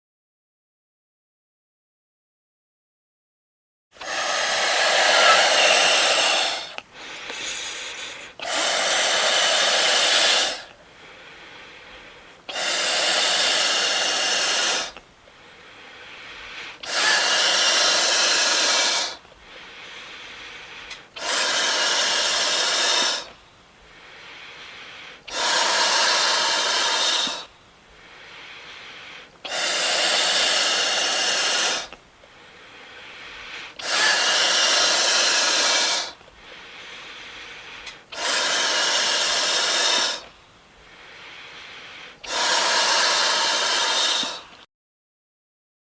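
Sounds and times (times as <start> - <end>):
balloon being inflated in puffs: 4.0 - 15.0, 15.7 - 23.4, 24.0 - 44.7
faint rush of air: 4.0 - 44.6.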